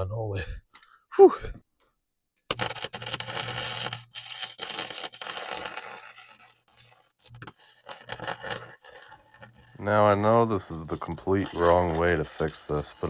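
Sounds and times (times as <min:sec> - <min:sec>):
electric welding arc crackling: 0:10.1 - 0:13.0.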